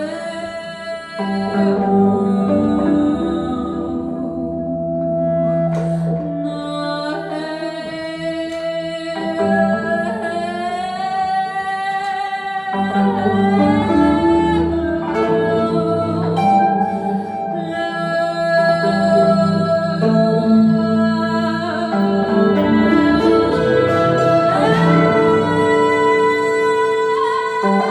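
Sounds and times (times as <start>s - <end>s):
struck or plucked notes: 1.5s - 6.5s, 12.8s - 27.9s
person singing sliding notes: 12.8s - 27.9s
sustained instrumental tones: 13.0s - 27.9s.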